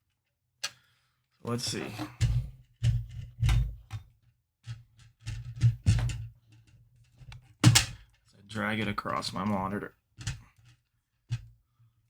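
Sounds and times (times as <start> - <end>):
plastic knocks and clicks: 2.0 - 6.3.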